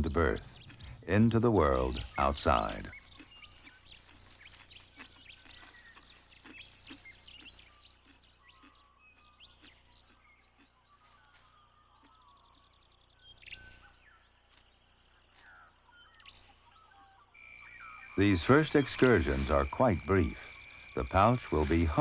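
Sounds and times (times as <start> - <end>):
small birds chirping: 0.0 - 22.0.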